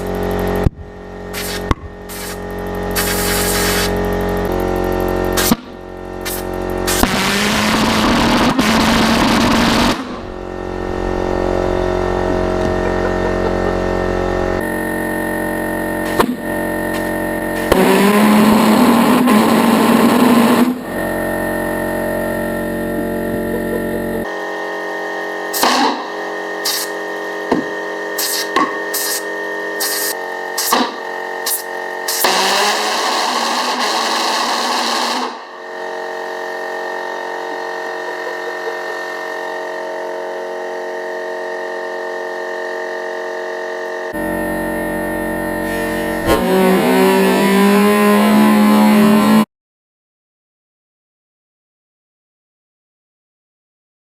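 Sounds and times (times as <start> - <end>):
pulse jet engine running: 0.0 - 49.5
deeper rumble: 10.0 - 15.2.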